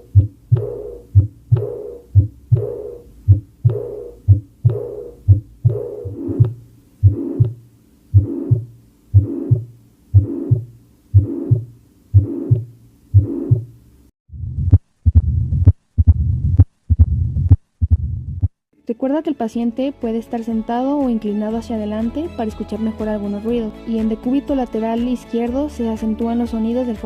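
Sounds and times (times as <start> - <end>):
heart beats lub-dub: 0.0 - 18.6
heart murmur whoosh: 3.3 - 13.7, 14.4 - 18.6.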